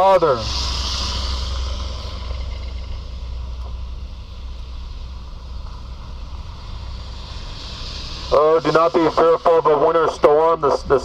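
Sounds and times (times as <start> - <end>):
passing vehicle hiss: 0.0 - 11.0
traffic low rumble: 0.0 - 11.0.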